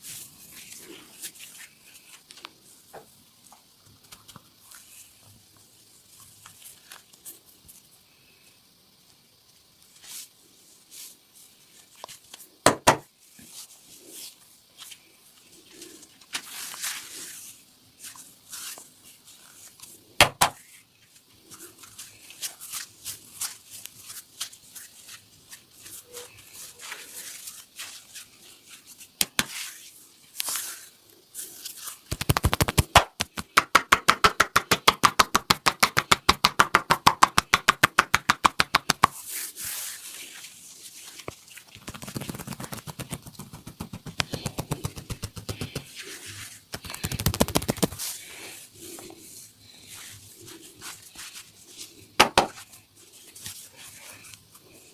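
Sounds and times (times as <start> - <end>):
hands rubbing and patting skin: 21.4 - 54.6
fast percussive hand slaps: 32.1 - 39.1, 41.8 - 45.9, 46.7 - 48.0.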